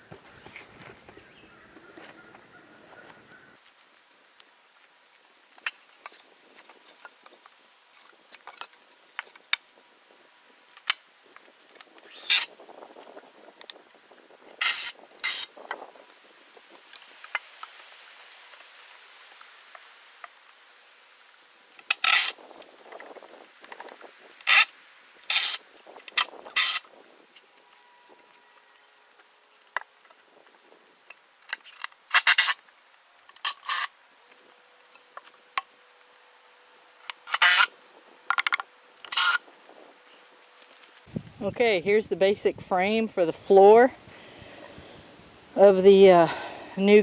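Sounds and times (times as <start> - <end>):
power drill driving screws: 12.1 - 12.5, 14.6 - 15.5, 25.3 - 25.6, 37.3 - 37.7.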